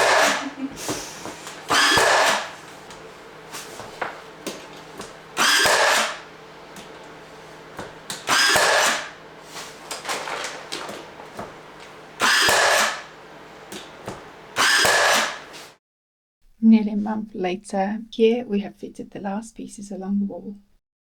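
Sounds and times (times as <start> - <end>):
power drill running: 0.0 - 2.9, 4.3 - 9.4, 10.0 - 13.4, 14.5 - 15.8.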